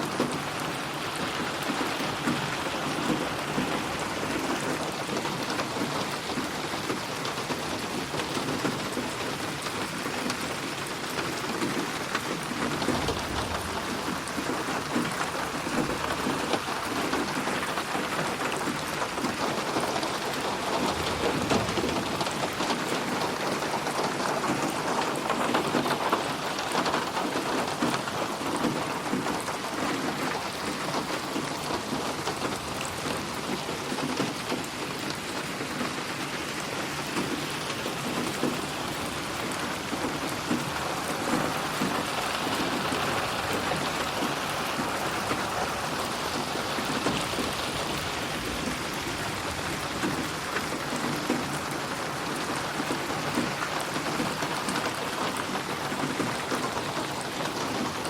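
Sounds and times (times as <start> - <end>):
heavy rain pattering: 0.0 - 58.0
thunder rumbling: 12.5 - 16.5, 20.4 - 23.3.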